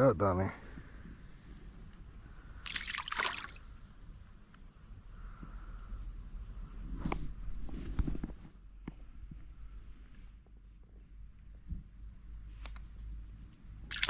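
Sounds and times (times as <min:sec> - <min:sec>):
insects droning: 0:00.0 - 0:14.0
water splash: 0:02.6 - 0:03.6
soft knocks and thuds: 0:11.6 - 0:12.0.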